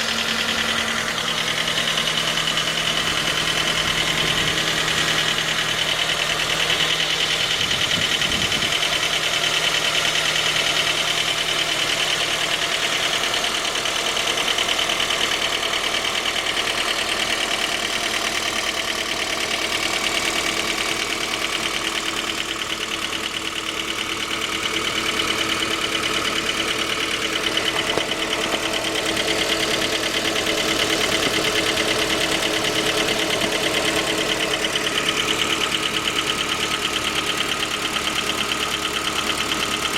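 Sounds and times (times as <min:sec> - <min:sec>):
car engine idling with rapid knock: 0:00.0 - 0:39.9.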